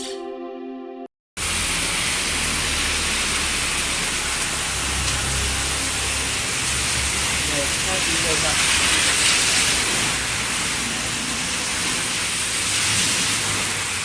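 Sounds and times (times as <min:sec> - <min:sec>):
musical intro: 0:00.0 - 0:01.1
heavy rain: 0:01.4 - 0:14.0.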